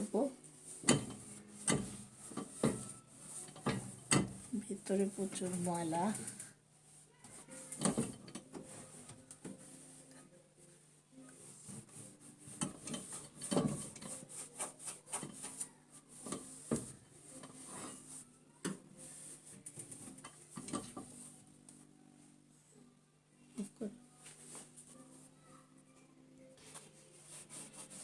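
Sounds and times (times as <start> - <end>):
hand scrubbing inside microwave: 0.0 - 9.8, 11.4 - 21.3.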